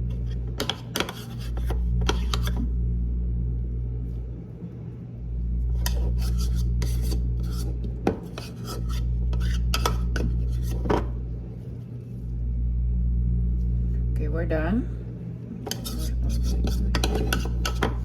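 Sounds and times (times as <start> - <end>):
steady low hum: 0.0 - 18.0
spoon scraping and clicking on bowl: 0.1 - 2.6, 5.8 - 11.0, 15.6 - 18.0.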